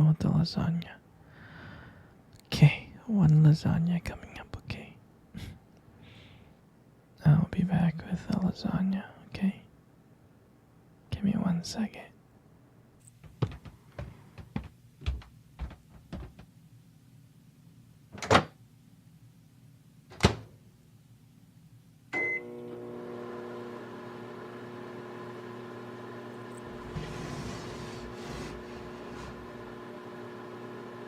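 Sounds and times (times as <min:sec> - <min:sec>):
microwave oven beep: 0:22.1 - 0:23.3
microwave oven humming: 0:22.1 - 0:31.0.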